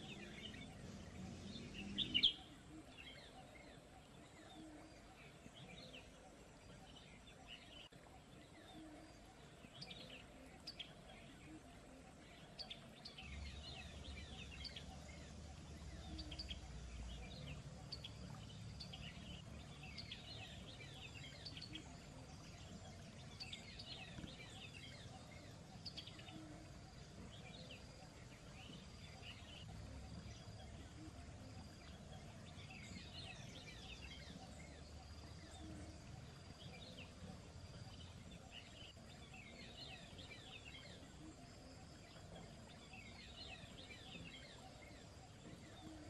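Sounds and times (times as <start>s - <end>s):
soft background hiss: 0.0s - 46.0s
songbirds chirping: 0.0s - 46.0s
low steady rumble: 11.2s - 40.2s.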